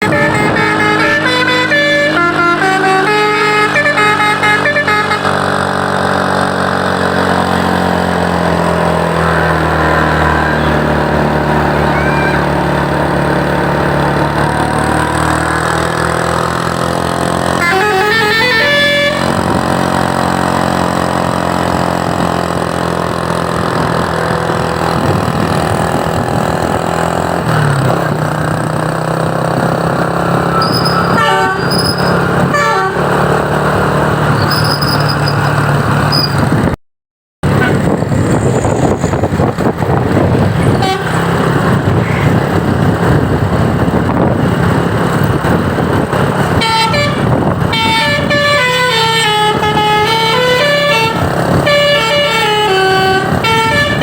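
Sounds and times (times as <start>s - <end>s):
multi-tone musical horn: 0.0s - 5.6s, 17.5s - 19.5s, 30.5s - 33.3s, 40.7s - 41.3s, 46.5s - 54.0s
truck engine running: 0.0s - 36.8s, 37.4s - 54.0s.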